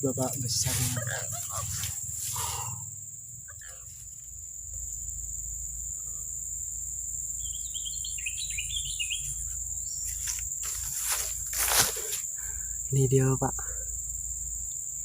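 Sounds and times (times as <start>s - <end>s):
bird chirping: 0.0s - 10.6s
insects droning: 0.0s - 15.0s.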